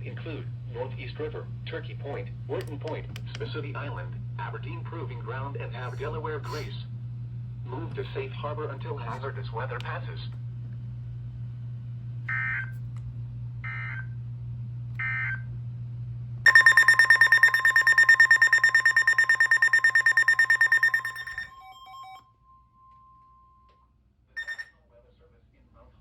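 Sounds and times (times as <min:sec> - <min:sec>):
screechy digital data bursts: 0:16.5 - 0:21.4
low hum: 0:16.5 - 0:21.5
rapidly pulsing alert tone: 0:16.5 - 0:21.5
faint steady tone: 0:16.5 - 0:23.8.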